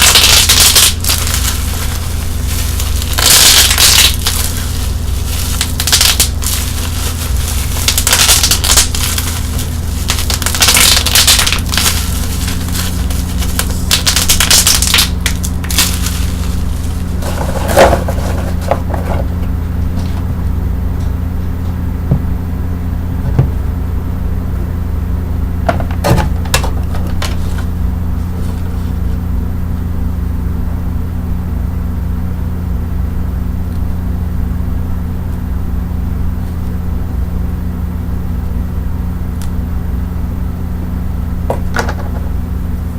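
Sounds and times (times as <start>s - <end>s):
bubble wrap crinkling and crackling: 0.0s - 18.8s
low electric hum: 0.0s - 42.9s.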